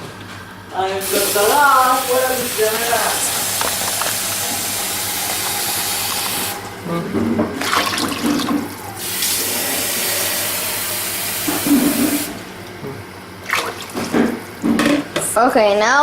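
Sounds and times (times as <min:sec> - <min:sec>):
water rushing: 0:01.0 - 0:06.8.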